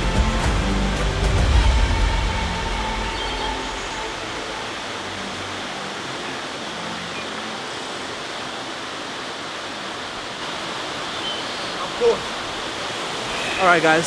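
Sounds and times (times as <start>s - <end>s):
background music: 0.0s - 10.1s
waterfall pouring into a pool: 0.0s - 14.0s.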